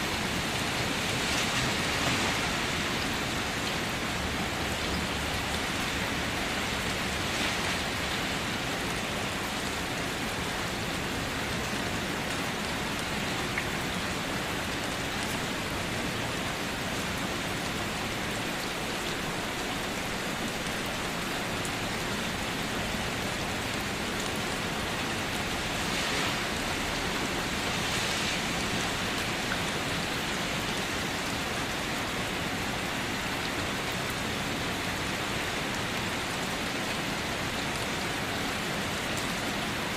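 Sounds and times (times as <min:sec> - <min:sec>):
light rain falling: 0:00.0 - 0:39.9.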